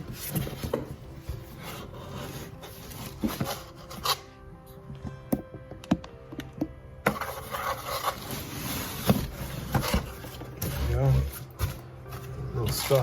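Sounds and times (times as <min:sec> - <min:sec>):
packaging rubbing and scraping: 0:00.0 - 0:04.3, 0:07.1 - 0:13.0.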